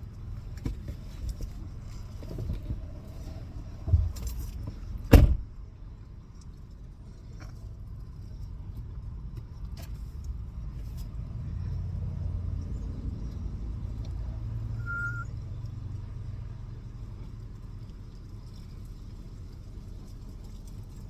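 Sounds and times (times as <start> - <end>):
motor vehicle rumble: 0.0 - 21.0
short high beep: 14.8 - 15.3.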